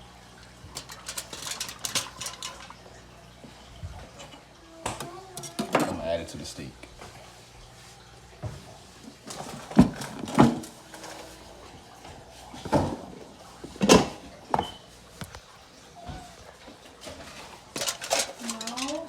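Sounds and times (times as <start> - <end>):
kitchen items knocking and thumping: 0.7 - 2.8, 4.1 - 6.0, 9.3 - 11.2, 12.6 - 13.1, 13.8 - 14.8, 17.1 - 19.0.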